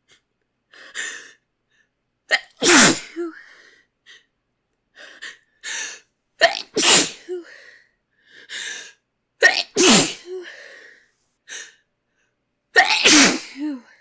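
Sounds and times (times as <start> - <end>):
person sneezing: 2.3 - 3.4, 6.4 - 7.5, 9.4 - 10.5, 12.8 - 13.9
gasping in-breath: 10.3 - 12.3.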